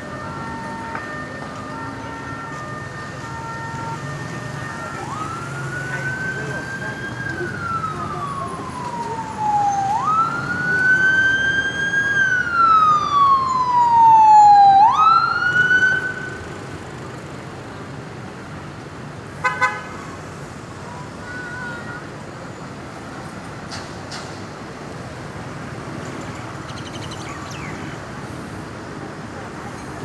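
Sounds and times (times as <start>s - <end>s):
ambulance siren wailing: 0.0s - 17.3s
traffic noise: 0.0s - 30.0s.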